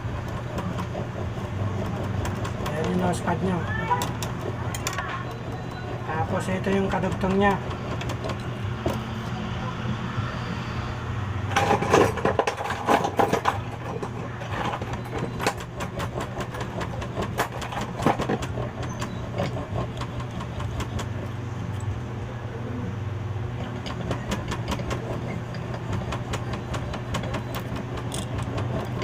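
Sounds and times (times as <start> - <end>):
low mechanical hum: 0.0 - 29.0
metal parts clicking and tapping: 3.9 - 5.7, 6.4 - 9.0, 11.5 - 21.9, 23.6 - 29.0.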